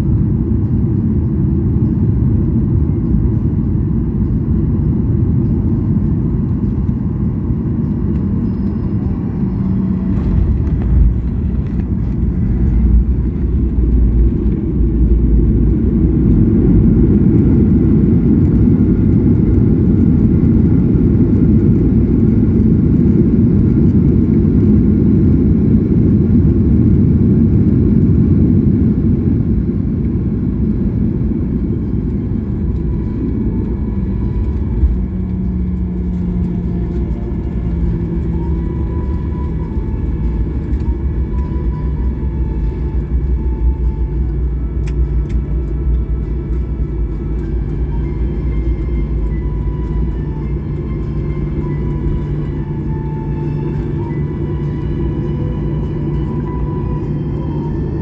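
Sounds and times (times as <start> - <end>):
airliner landing rumble: 0.0 - 58.0
heavy low bumps: 8.2 - 23.7.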